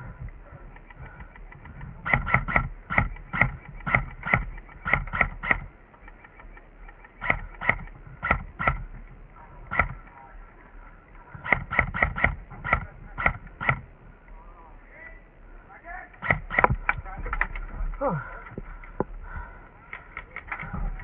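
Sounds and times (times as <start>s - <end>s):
airsoft gun shots: 1.7s - 5.7s, 7.2s - 8.9s, 9.7s - 10.1s, 11.3s - 13.8s, 16.1s - 17.1s.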